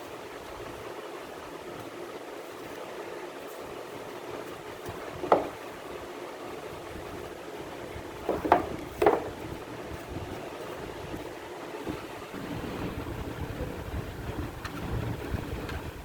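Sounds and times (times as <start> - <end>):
background hiss: 0.0 - 16.0
short knocks: 5.2 - 5.7, 8.2 - 9.5.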